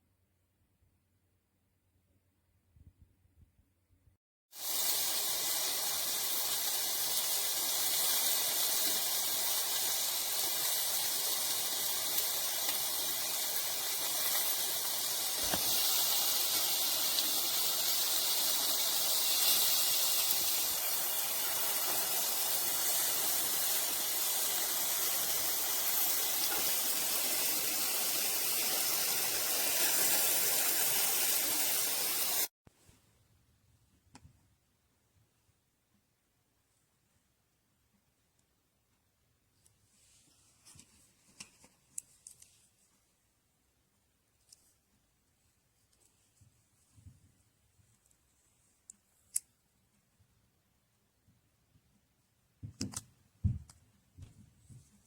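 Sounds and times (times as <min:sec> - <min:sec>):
steady rushing hiss: 0:04.6 - 0:32.5.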